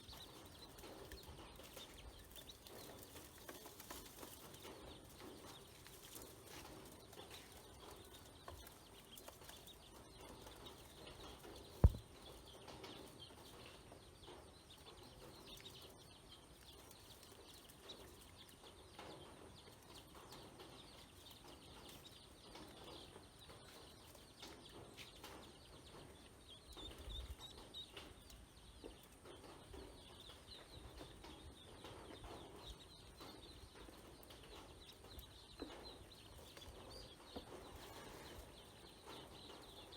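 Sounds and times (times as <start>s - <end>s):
ducklings peeping: 0.0s - 39.9s
sharp thump: 11.8s - 12.0s.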